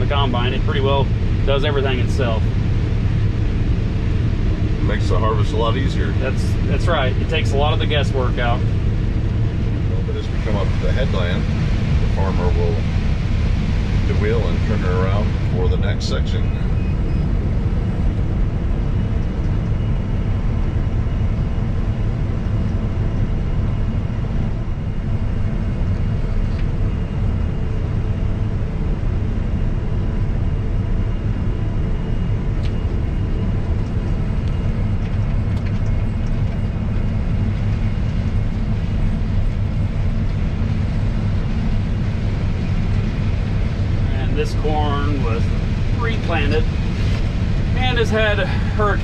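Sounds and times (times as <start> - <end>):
combine harvester engine drone: 0.0 - 49.0
faint steady whines: 0.0 - 49.0.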